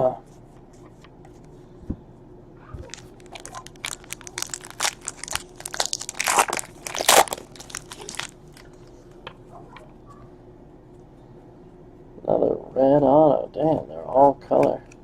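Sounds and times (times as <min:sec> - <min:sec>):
foil wrapper tearing and crinkling: 0:02.9 - 0:08.4.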